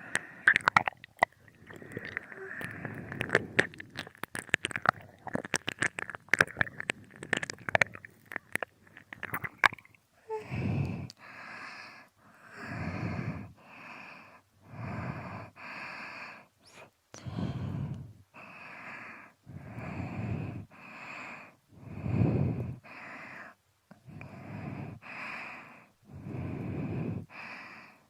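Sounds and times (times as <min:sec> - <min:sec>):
close soft breathing: 0:00.0 - 0:00.7, 0:01.4 - 0:04.0, 0:10.2 - 0:28.0.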